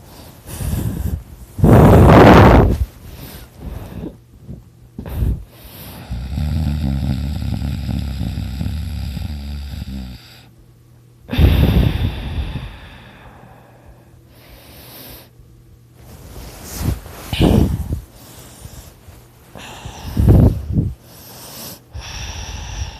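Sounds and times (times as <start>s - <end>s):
quiet breathing: 0.0s - 1.9s, 2.7s - 10.6s, 11.3s - 22.9s
person snoring loudly: 5.0s - 10.5s, 19.6s - 20.9s, 21.5s - 22.9s.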